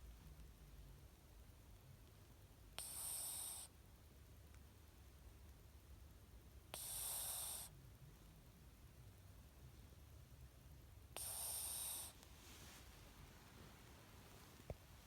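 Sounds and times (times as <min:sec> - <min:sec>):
cat snoring: 0:02.8 - 0:03.7, 0:06.7 - 0:07.7, 0:11.1 - 0:12.2.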